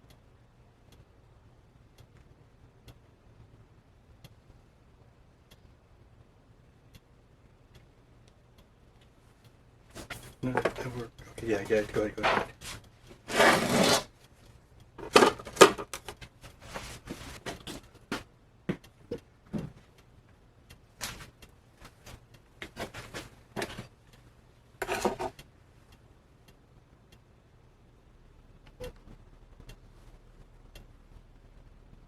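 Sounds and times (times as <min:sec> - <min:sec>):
scraping bursts: 0:11.6 - 0:14.1.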